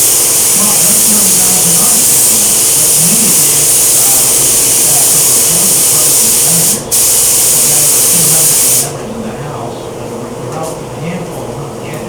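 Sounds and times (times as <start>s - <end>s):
compressed air hissing: 0.0s - 9.0s.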